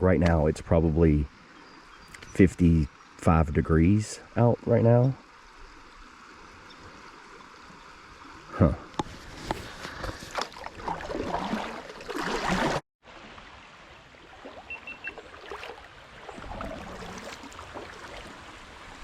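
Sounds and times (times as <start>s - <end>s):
water lapping and splashing: 5.4s - 19.0s.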